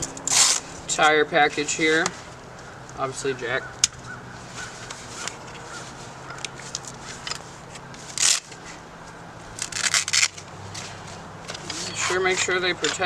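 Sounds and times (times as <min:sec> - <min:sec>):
packaging crinkling and rustling: 0:09.6 - 0:13.0.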